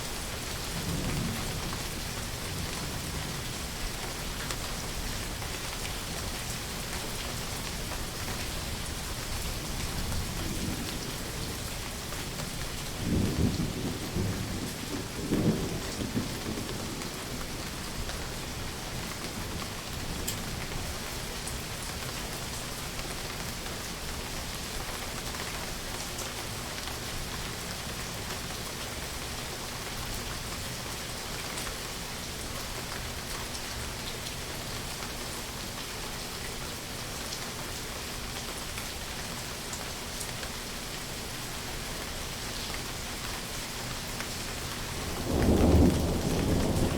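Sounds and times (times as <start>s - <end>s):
steady rain falling: 0.0s - 46.9s
low rumble of thunder: 0.4s - 5.5s, 6.9s - 20.7s, 44.6s - 46.9s.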